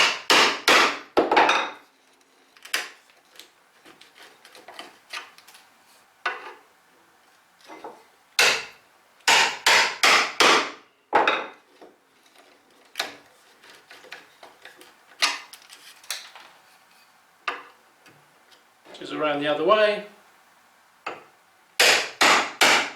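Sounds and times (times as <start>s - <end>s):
hammer striking chisel: 0.0s - 1.0s, 8.4s - 11.4s, 21.8s - 22.9s.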